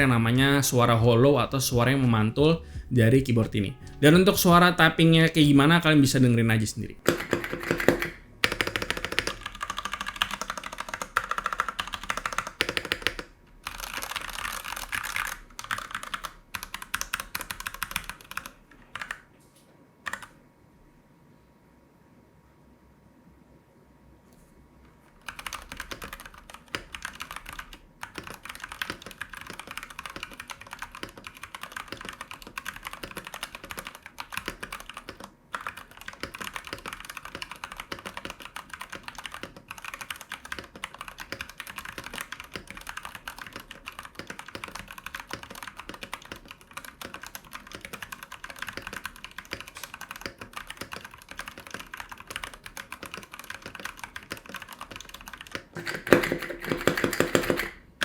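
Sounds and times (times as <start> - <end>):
mechanical keyboard key clacks: 25.2 - 57.8.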